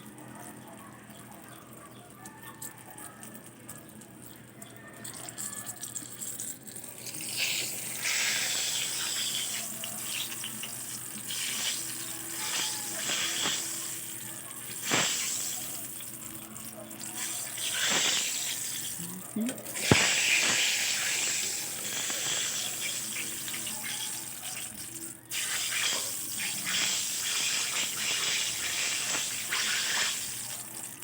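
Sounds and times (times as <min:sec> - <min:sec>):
eggplant frying in hot oil: 0:04.8 - 0:31.0.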